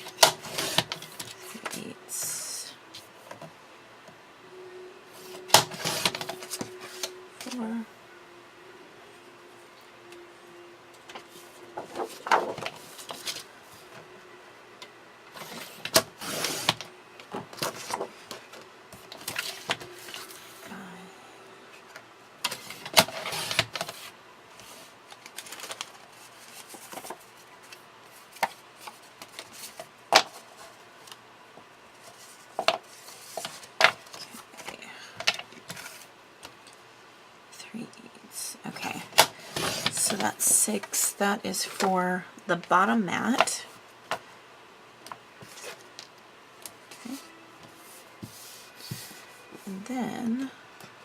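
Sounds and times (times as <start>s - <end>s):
faint steady hum: 0.0s - 51.0s
paper scraping: 5.2s - 7.1s, 15.4s - 16.9s.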